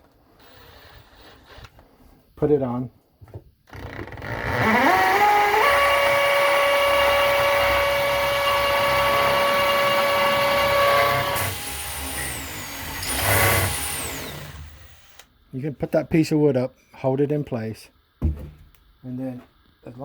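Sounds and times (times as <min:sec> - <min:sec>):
power drill boring into brick: 0:03.7 - 0:15.3.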